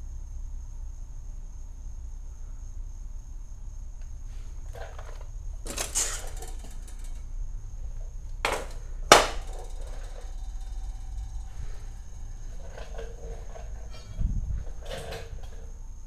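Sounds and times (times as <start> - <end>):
rustling scrape: 4.3 - 7.2, 9.4 - 16.0.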